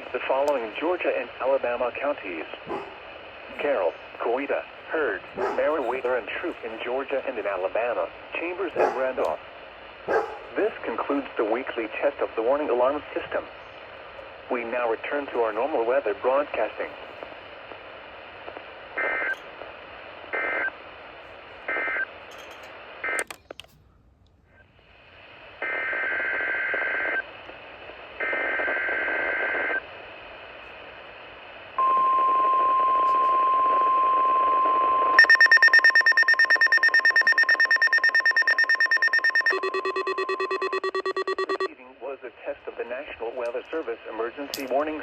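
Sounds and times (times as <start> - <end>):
radio hiss: 0.0 - 22.2, 24.5 - 45.0
steady warning alarm tone: 5.3 - 6.3, 31.8 - 41.7
rapid pulsing alert beep: 35.2 - 41.7
two-tone data signal bursts: 35.2 - 41.7.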